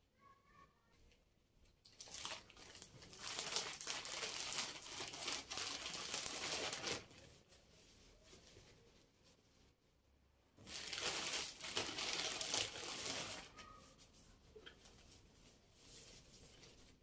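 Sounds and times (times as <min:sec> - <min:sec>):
crinkly material rustling: 0:01.8 - 0:17.0.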